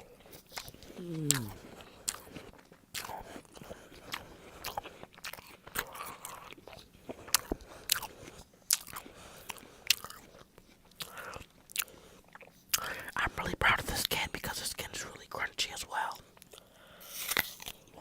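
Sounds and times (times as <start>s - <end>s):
mouth smacks: 0.8s - 1.6s.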